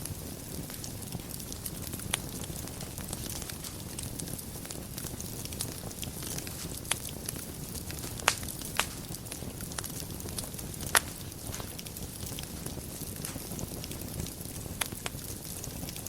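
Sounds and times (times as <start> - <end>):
fireplace fire crackling: 0.0 - 16.0
sharp fire pops: 0.0 - 16.0.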